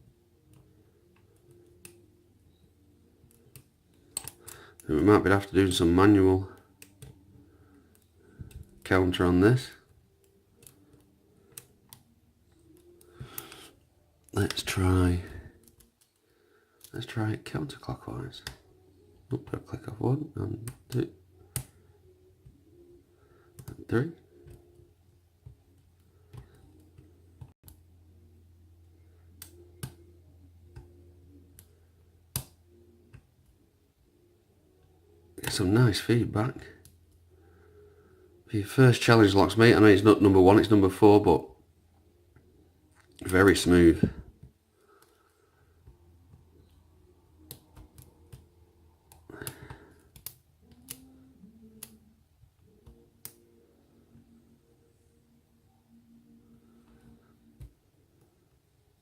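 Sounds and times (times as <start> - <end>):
low steady hum: 0.0 - 59.0
lock pick clicking pins: 3.2 - 4.9.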